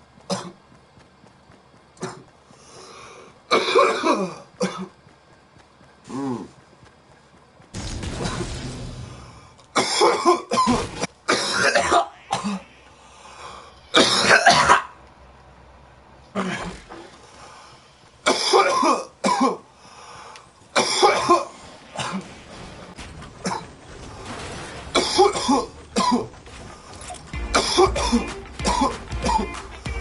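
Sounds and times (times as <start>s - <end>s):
boy coughing: 9.8s - 12.6s, 18.3s - 19.6s, 25.0s - 26.3s, 27.5s - 29.6s.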